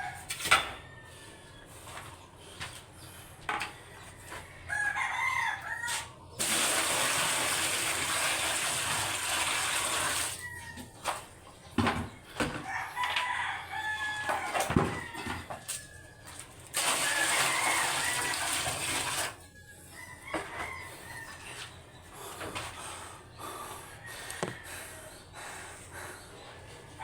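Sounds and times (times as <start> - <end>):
rooster crowing: 0.0 - 1.5, 3.8 - 6.2, 10.3 - 11.0, 12.6 - 18.8, 19.4 - 21.7, 24.0 - 25.2.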